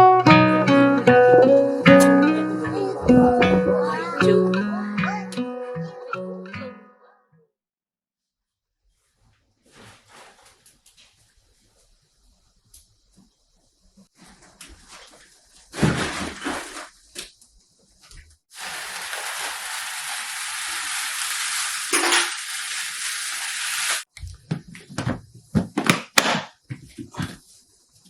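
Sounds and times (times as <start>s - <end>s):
objects knocking and clattering: 21.9s - 22.9s.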